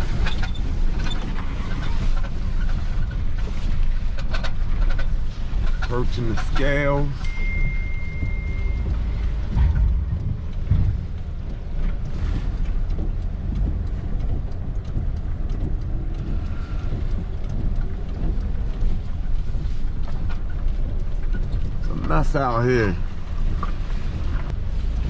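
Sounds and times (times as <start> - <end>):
truck engine rumbling: 0.0 - 25.0
heavy rain: 7.1 - 25.0
sharp drop hits: 7.3 - 12.0.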